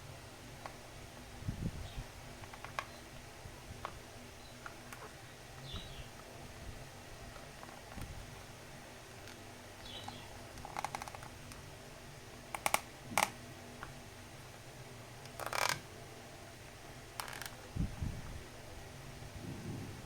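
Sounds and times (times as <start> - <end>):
soft low thumps: 19.3 - 20.0.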